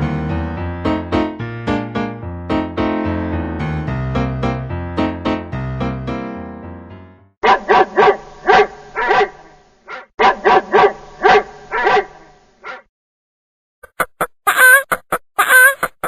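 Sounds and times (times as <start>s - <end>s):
piano chord: 0.0s - 7.4s
dog barking: 7.4s - 12.9s.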